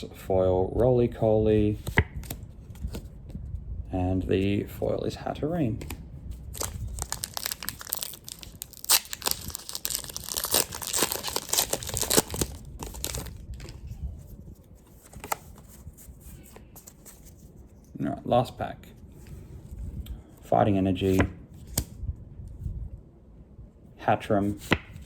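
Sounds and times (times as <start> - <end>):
foil wrapper crinkling and tearing: 6.5 - 13.8.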